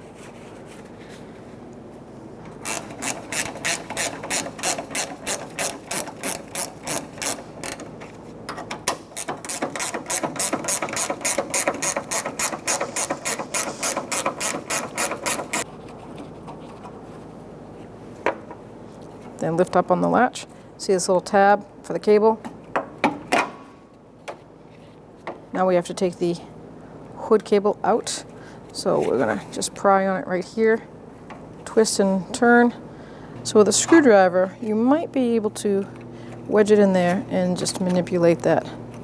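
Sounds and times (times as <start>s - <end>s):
ratchet clicking rapidly: 2.6s - 7.9s, 9.1s - 15.6s.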